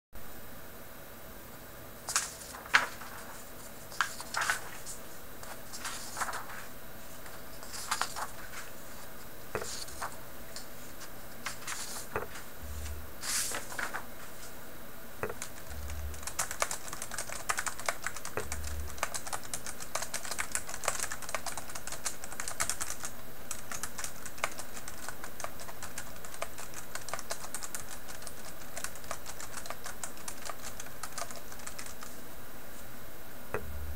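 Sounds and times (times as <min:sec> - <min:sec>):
keyboard typing: 0:15.2 - 0:32.1.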